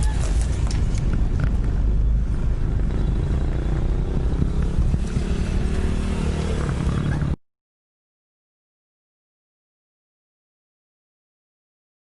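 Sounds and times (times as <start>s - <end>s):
motor vehicle engine rumbling: 0.0s - 7.4s.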